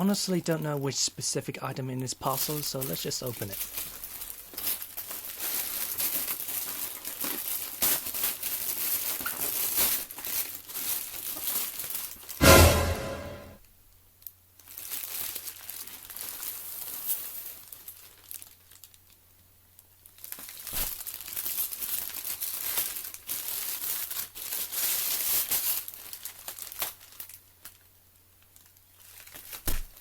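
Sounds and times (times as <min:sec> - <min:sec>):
packaging tearing and rustling: 0:02.4 - 0:12.3, 0:20.2 - 0:27.8, 0:28.6 - 0:29.8.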